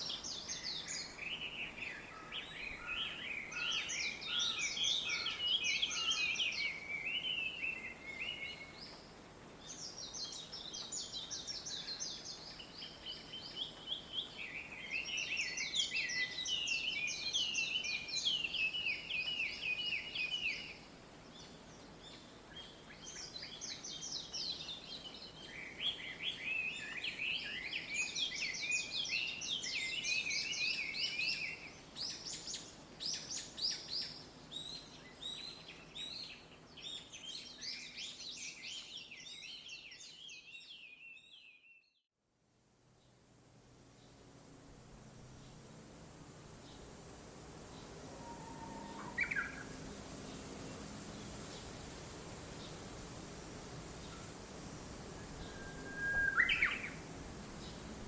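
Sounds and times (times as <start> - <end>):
small birds chirping: 0.0 - 42.0, 55.2 - 57.9.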